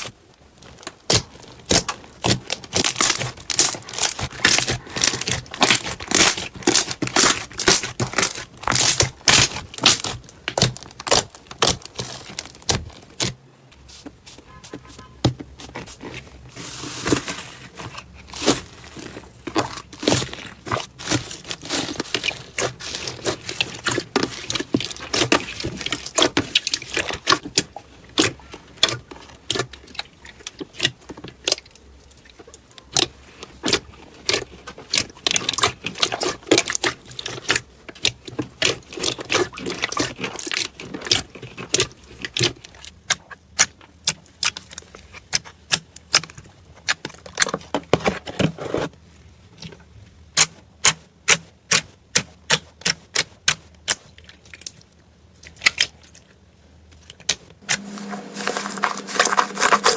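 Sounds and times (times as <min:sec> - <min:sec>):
slime clicking and crackling: 0:00.0 - 0:13.4, 0:17.0 - 0:47.8, 0:50.3 - 0:56.2.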